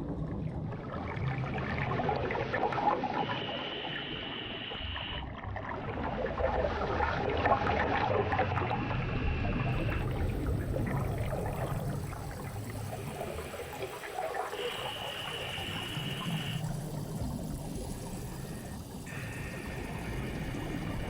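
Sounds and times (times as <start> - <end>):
underwater bubbling: 0.0 - 21.0.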